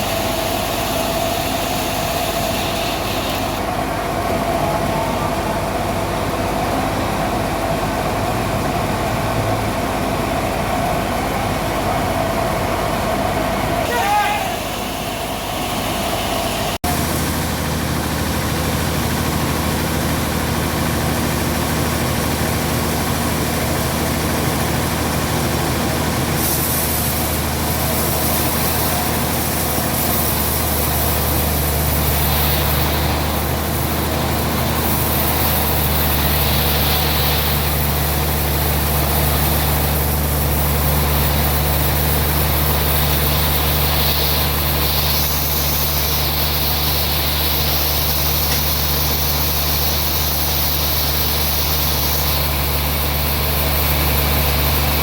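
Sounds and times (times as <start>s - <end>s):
hiss: 0.0s - 3.9s, 25.4s - 55.0s
heavy engine running: 0.0s - 55.0s.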